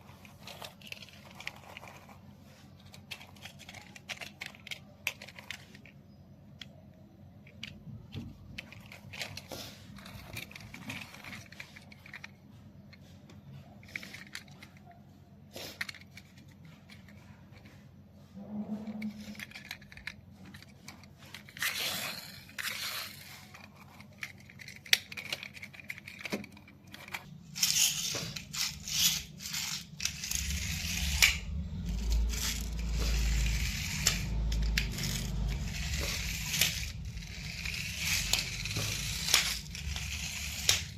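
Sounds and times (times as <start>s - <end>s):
packaging scraping and tearing: 0.0s - 6.2s, 8.4s - 12.5s, 18.4s - 40.9s
low rumble: 30.0s - 40.6s.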